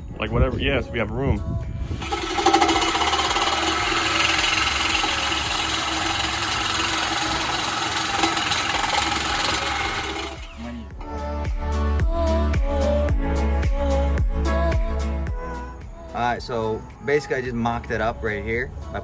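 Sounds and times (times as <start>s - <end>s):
power tool running: 1.9s - 10.8s
background music with a beat: 11.0s - 17.1s.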